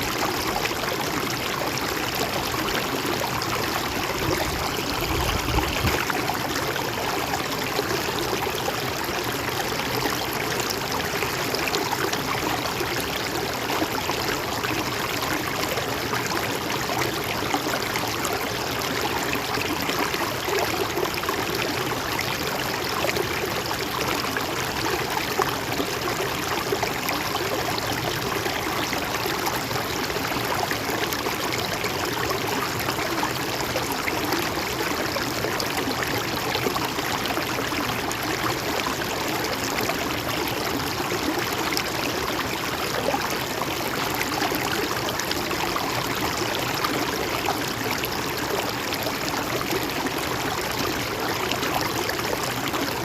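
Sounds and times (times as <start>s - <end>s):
stream gurgling over rocks: 0.0s - 53.0s.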